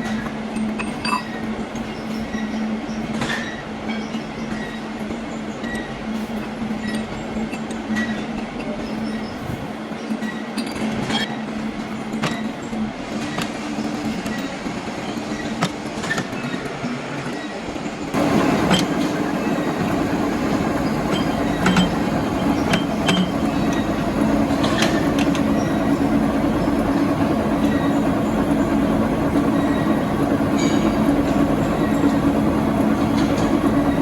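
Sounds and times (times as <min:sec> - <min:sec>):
metal lathe running: 0:18.1 - 0:34.0.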